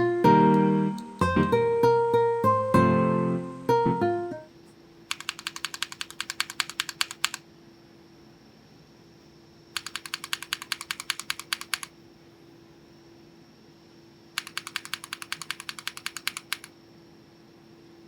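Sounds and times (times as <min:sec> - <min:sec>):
keyboard switches clacking: 0:05.1 - 0:07.4, 0:09.8 - 0:11.9, 0:14.4 - 0:16.7.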